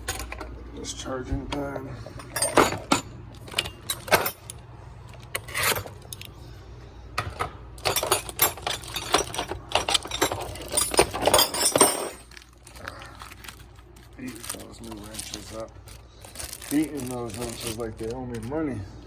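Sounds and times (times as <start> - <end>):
wrenches clinking together: 1.6 - 6.3, 7.8 - 12.4.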